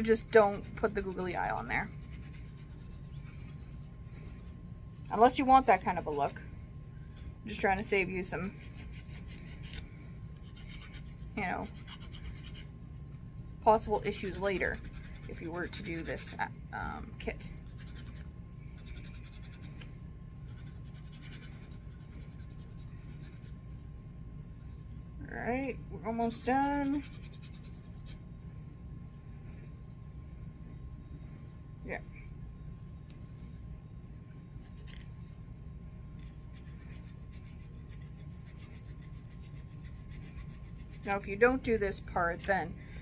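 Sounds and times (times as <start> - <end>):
nail file scratching: 0.0 - 6.3, 8.4 - 9.8, 10.4 - 12.7, 13.9 - 16.5, 17.6 - 23.6, 26.1 - 28.2, 34.6 - 35.1, 36.2 - 41.3.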